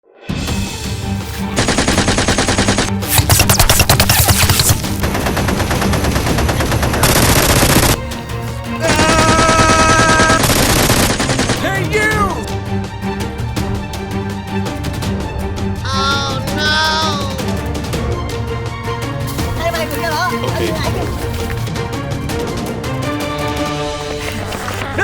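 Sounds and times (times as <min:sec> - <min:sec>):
automatic gunfire sound effects: 0:01.6 - 0:08.0, 0:08.9 - 0:11.7.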